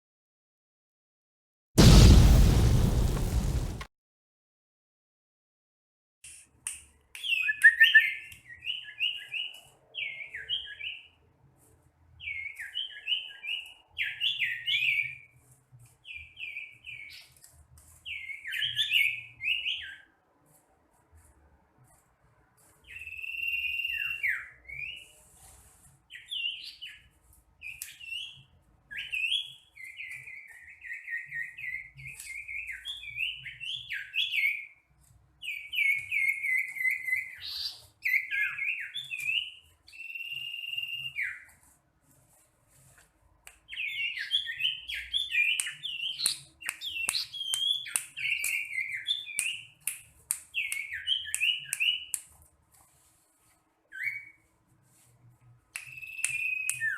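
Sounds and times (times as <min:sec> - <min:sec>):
bird singing whistled phrases: 0:35.5 - 0:41.4, 0:55.8 - 0:56.9.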